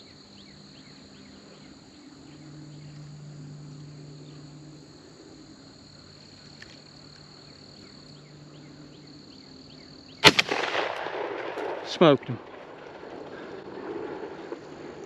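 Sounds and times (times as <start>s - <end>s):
insects trilling: 0.0s - 15.0s
low hum: 0.0s - 15.0s.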